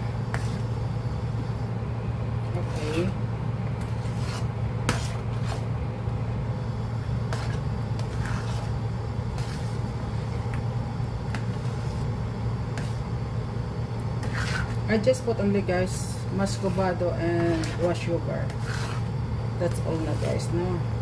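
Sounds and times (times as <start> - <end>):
utensil scraping a pot: 2.5 - 3.2, 3.8 - 5.7, 7.3 - 9.8, 11.3 - 13.1, 14.2 - 20.7.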